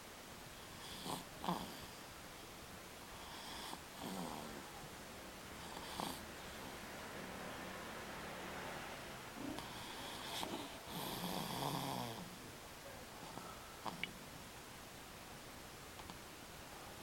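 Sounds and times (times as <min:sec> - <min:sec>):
pet snoring faintly: 0:00.6 - 0:02.0, 0:03.1 - 0:04.9, 0:05.6 - 0:06.8, 0:09.4 - 0:12.4.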